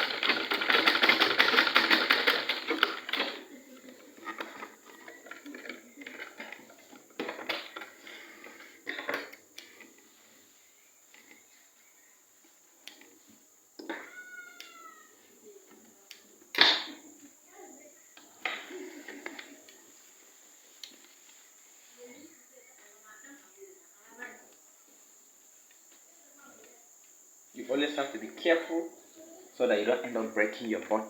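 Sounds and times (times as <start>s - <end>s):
sewing machine stitching: 0.0s - 9.3s
sewing machine clicks: 0.0s - 9.9s.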